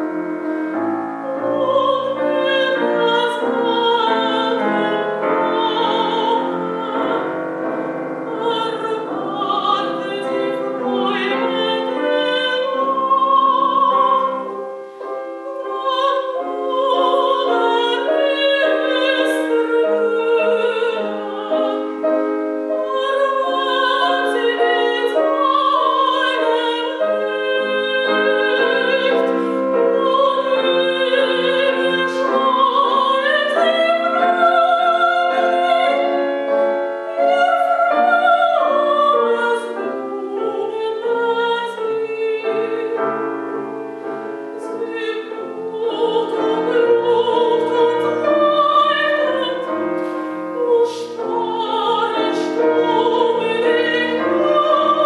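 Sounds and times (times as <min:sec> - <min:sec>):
piano: 0:00.0 - 0:55.0
soprano singing with vibrato: 0:01.2 - 0:55.0.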